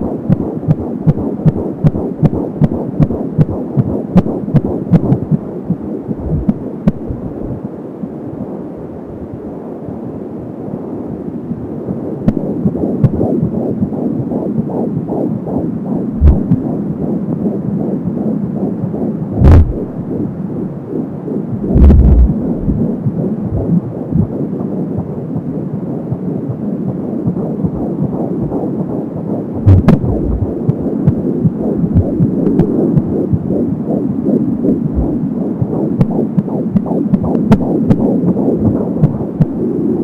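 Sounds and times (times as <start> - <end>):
fast fetal heartbeat pulsing: 0.0 - 7.6, 12.3 - 16.8, 19.3 - 19.9, 21.5 - 24.4, 26.1 - 28.7, 29.6 - 39.6
loud thumps: 16.2 - 16.6, 19.4 - 19.9, 21.6 - 22.9, 29.6 - 30.8
whooshing: 21.6 - 23.0.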